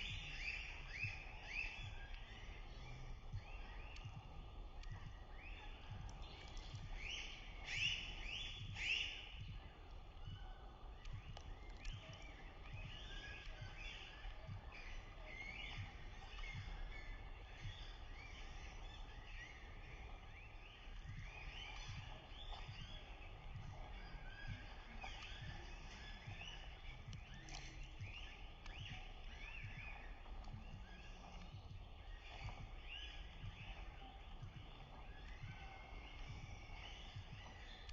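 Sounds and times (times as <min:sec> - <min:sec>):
birds chirping: 0:00.0 - 0:37.9
wind rumble on microphone: 0:00.0 - 0:37.9.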